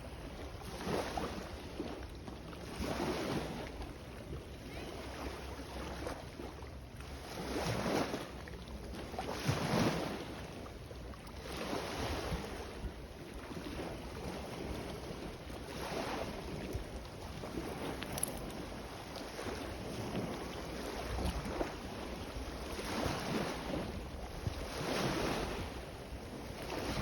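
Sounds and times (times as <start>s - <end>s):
sea waves washing in: 11.3s - 27.0s
wind rumbling on microphone: 11.7s - 27.0s.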